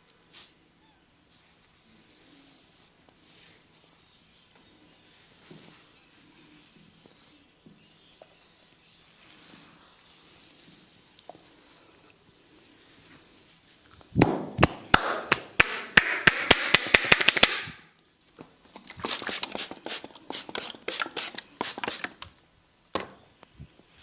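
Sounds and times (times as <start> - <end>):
rustle of hair and skin: 0.1 - 0.6, 1.2 - 13.9
hands slapping on head: 14.2 - 17.8.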